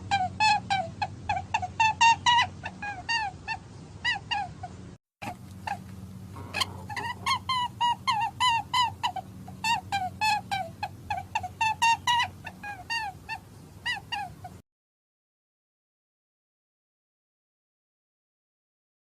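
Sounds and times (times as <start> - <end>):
low steady hum: 0.0 - 14.6
small animal squeaky chirps: 6.4 - 14.5.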